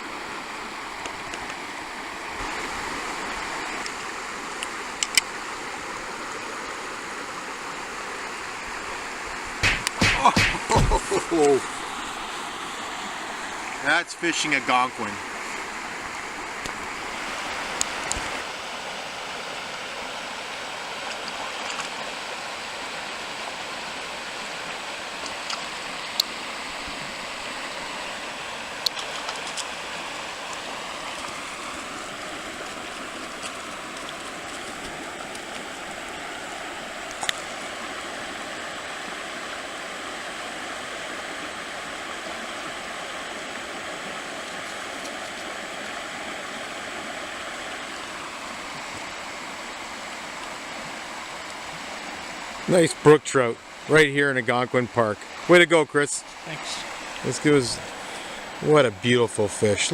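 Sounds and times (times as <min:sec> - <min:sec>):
stream water rushing: 0:00.0 - 0:59.9
sharp clicks: 0:09.6 - 0:10.9.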